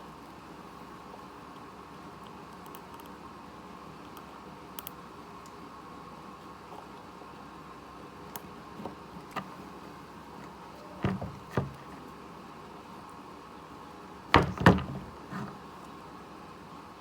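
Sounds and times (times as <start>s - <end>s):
faint steady hum: 0.0s - 17.0s
knocks and clatters: 11.0s - 11.9s, 14.4s - 15.6s.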